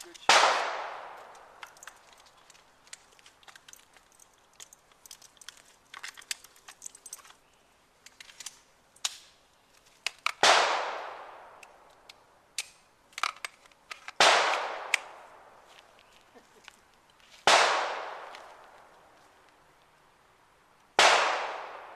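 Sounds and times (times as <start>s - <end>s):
loud pistol shots with echo: 0.3s - 1.2s, 10.4s - 11.6s, 14.2s - 15.0s, 17.5s - 18.3s, 21.0s - 21.9s.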